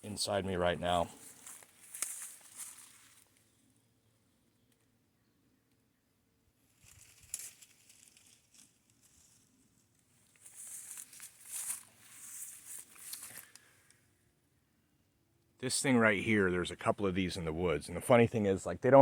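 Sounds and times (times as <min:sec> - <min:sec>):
footsteps crunching through dry leaves: 0:01.0 - 0:03.3, 0:06.8 - 0:09.5, 0:10.2 - 0:13.6.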